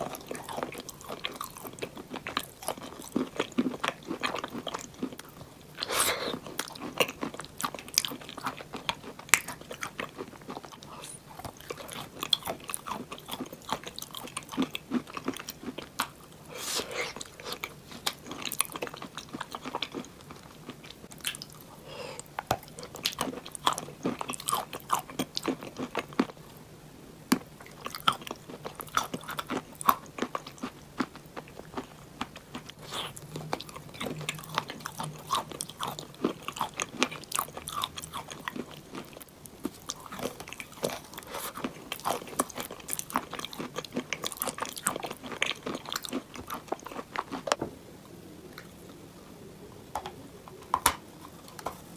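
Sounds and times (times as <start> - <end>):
chalk crunching between teeth: 16.5 - 18.2.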